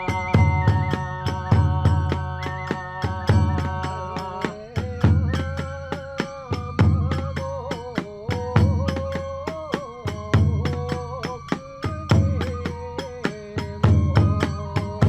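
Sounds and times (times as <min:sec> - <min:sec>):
large drum beating: 0:00.0 - 0:05.9
held wavering melody: 0:00.0 - 0:15.0.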